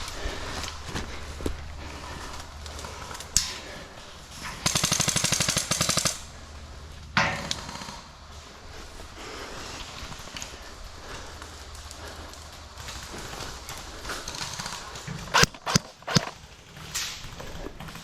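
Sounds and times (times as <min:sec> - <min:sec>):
airsoft gun automatic burst: 0:04.6 - 0:06.2, 0:14.5 - 0:16.4.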